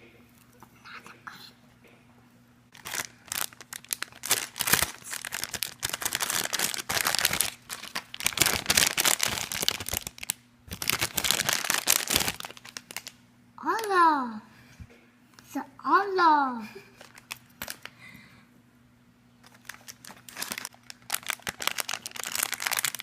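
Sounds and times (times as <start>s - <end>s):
packaging torn and crinkled: 2.7s - 13.2s, 17.0s - 17.9s, 19.4s - 23.0s.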